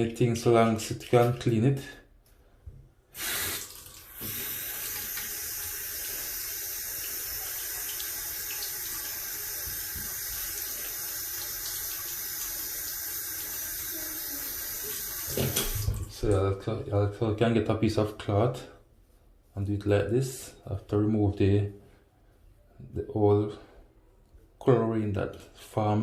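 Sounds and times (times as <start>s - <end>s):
tap running into sink: 7.3s - 12.5s, 15.0s - 16.2s.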